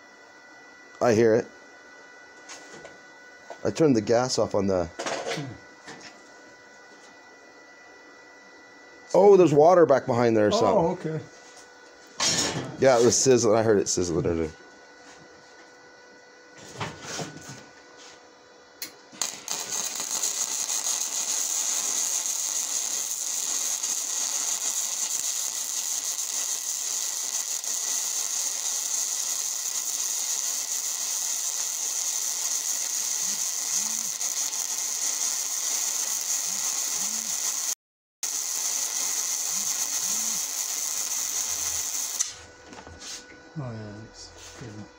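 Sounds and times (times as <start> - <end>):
welding arc crackling hiss: 18.8 - 42.4.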